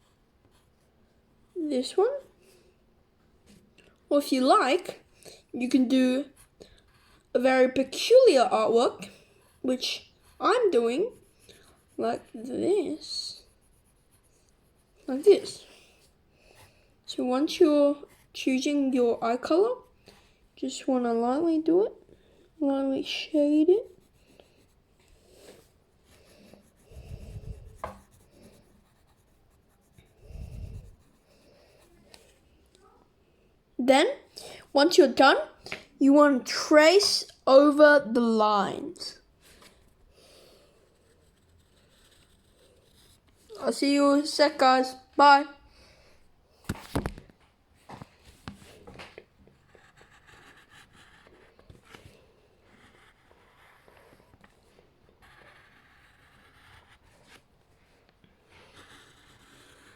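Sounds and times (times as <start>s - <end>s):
pencil shading on paper: 0.0s - 0.9s, 5.6s - 20.0s, 23.0s - 33.0s, 39.8s - 44.3s, 49.6s - 57.5s, 58.4s - 59.9s.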